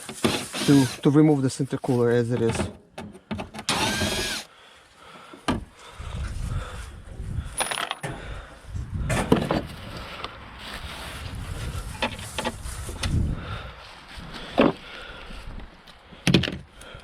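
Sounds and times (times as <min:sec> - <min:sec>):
metal tools clinking and knocking: 0:07.5 - 0:08.2.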